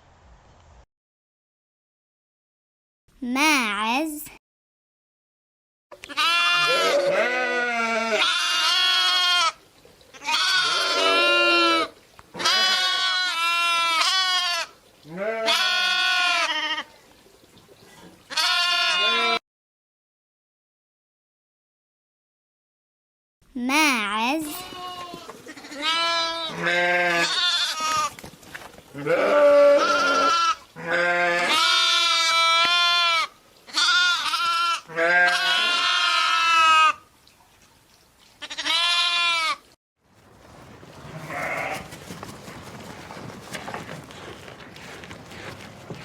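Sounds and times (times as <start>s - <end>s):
goat bleating: 6.0s - 16.9s, 18.3s - 19.4s, 24.4s - 28.2s, 28.9s - 37.0s, 38.4s - 39.7s, 41.0s - 46.0s
outdoor background hiss: 27.3s - 42.1s.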